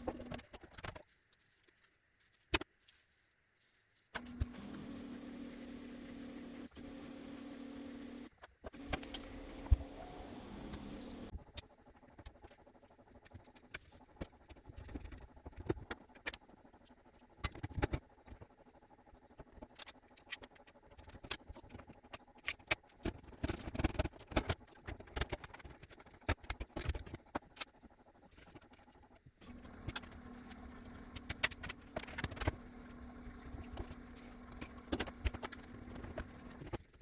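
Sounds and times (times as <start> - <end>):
refrigerator hum: 0.0 - 0.8, 4.2 - 13.5, 27.8 - 37.0.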